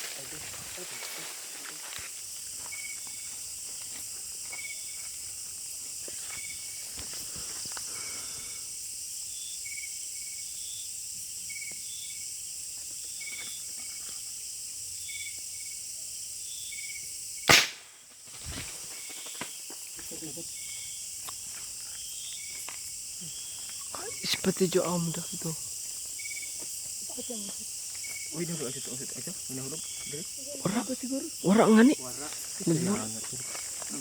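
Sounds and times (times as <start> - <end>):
high-pitched insect drone: 0.0 - 17.5, 18.4 - 34.0
short insect chirps: 0.0 - 34.0
sharp loud crack: 17.5 - 18.0.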